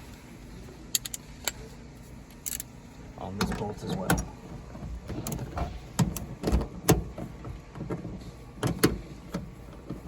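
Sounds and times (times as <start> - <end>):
hand wrench clicking on bolt: 1.0 - 1.6.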